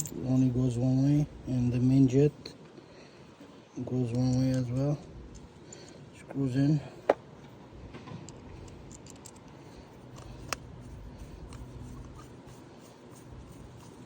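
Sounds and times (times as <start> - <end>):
low steady hum: 0.0 - 14.0
small clicks of metal parts: 4.0 - 6.0, 8.1 - 10.7.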